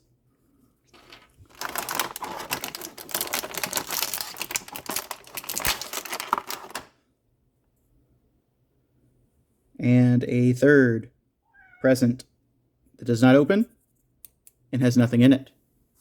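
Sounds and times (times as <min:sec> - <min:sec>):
toy packaging crinkling and clicking: 0:00.9 - 0:06.9.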